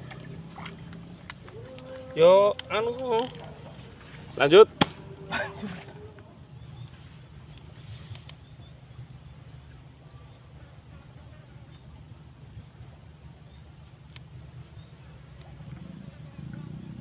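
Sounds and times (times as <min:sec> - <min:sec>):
faint sharp clicks: 0:14.1 - 0:14.3.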